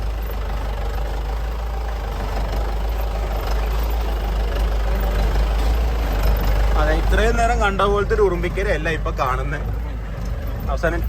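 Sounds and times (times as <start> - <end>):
jeep engine low rumble: 0.0 - 11.0.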